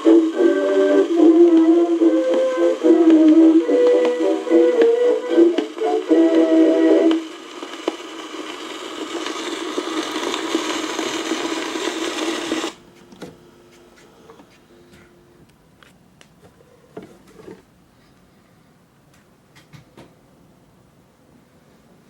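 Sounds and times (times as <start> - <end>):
military band on old record: 0.0 - 13.1
record surface noise hiss: 0.0 - 22.0.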